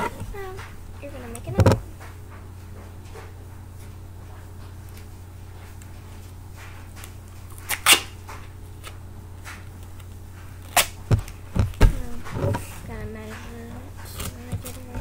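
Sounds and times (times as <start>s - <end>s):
duct tape ripping: 7.5s - 8.2s, 10.6s - 11.4s.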